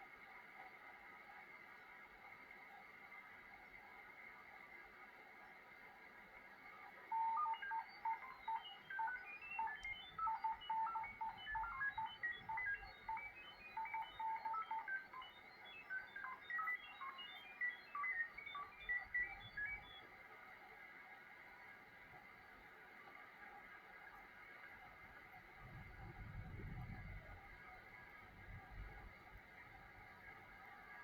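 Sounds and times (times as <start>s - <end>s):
rapid radio beeps at shifting pitches: 7.1s - 20.1s.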